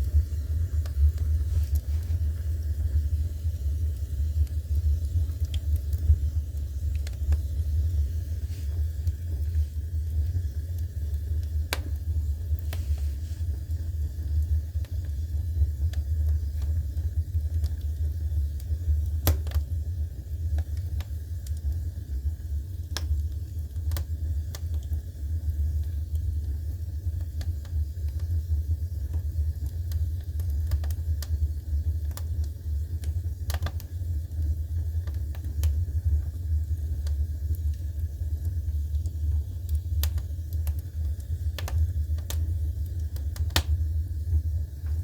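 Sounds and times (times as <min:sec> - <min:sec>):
furnace low hum: 0:00.0 - 0:45.0
wood fire popping and crackling: 0:00.0 - 0:45.0.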